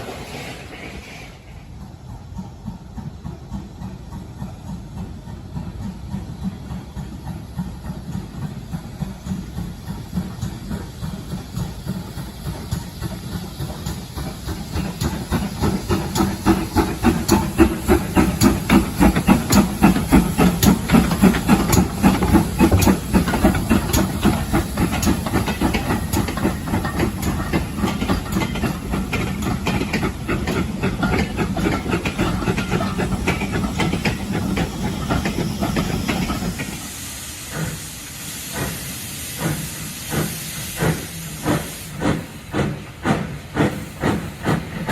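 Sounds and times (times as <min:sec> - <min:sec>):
hiss of steam: 0:00.0 - 0:44.9
steam locomotive chuffing: 0:00.0 - 0:44.9.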